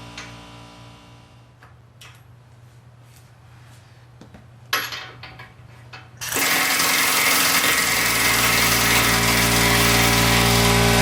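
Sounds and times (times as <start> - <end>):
power tool running: 0.0 - 1.5, 6.2 - 11.0.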